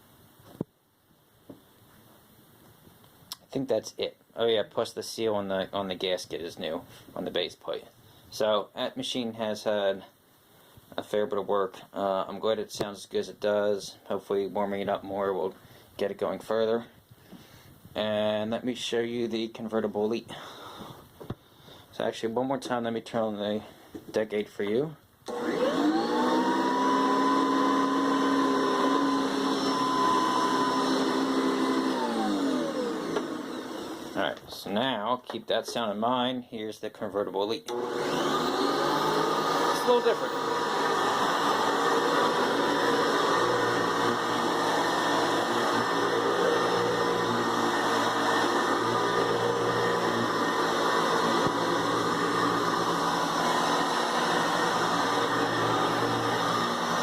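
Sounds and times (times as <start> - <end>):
vacuum cleaner whining: 25.3 - 34.4, 37.7 - 57.0.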